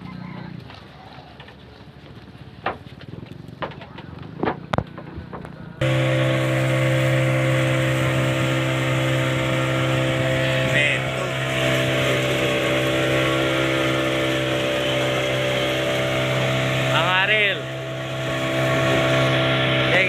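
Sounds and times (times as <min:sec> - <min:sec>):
boat engine droning: 0:04.3 - 0:20.0.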